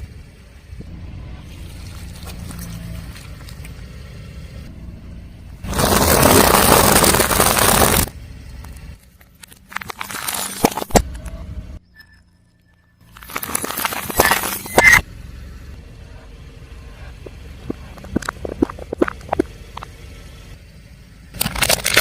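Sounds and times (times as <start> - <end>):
low engine rumble: 0.0 - 22.0
tyre crunching objects: 5.6 - 8.1, 9.5 - 11.1, 13.1 - 15.0, 17.0 - 19.9, 21.4 - 22.0
crackling snaps: 17.2 - 20.0.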